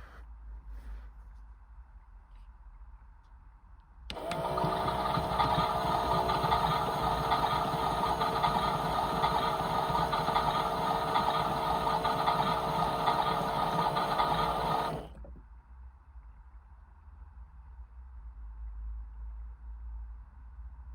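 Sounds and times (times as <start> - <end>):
small electric motor whine: 4.1 - 15.3.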